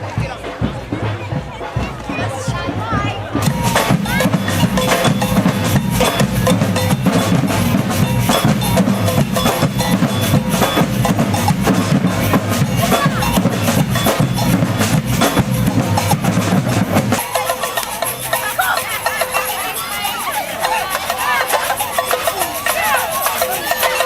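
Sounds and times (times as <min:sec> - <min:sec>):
bass drums and snares drumming: 0:00.0 - 0:18.7.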